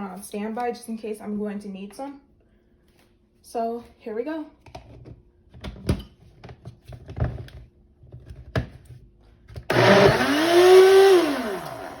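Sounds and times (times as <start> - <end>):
blender motor whining: 9.7 - 12.0.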